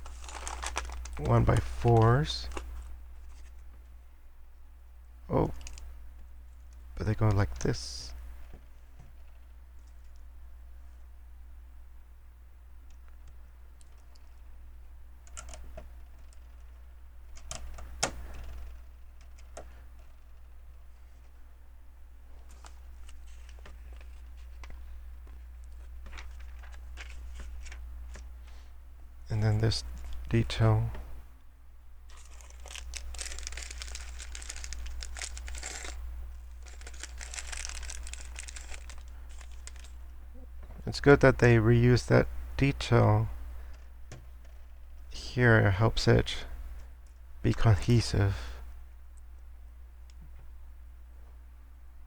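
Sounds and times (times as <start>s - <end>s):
plastic bag crinkling: 0.0s - 2.6s, 32.1s - 40.0s
faint low hum: 0.0s - 52.0s.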